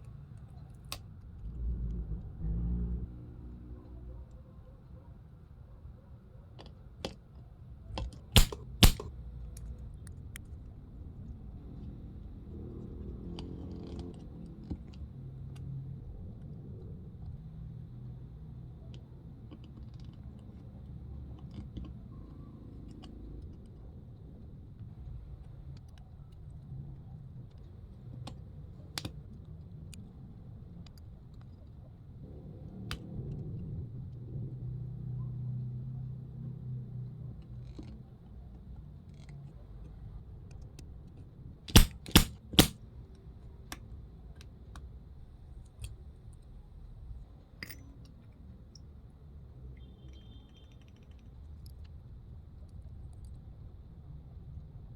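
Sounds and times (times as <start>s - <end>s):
clicks and taps: 8.0s - 9.1s, 41.7s - 42.8s.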